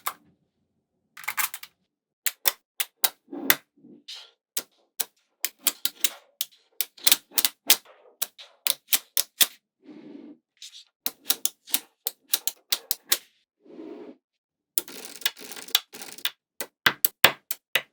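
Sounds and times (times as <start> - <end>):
magnetic balls clicking together: 2.3 - 3.2, 4.6 - 9.5, 11.1 - 13.2, 14.8 - 17.9
balls scraping or rolling: 9.8 - 14.2.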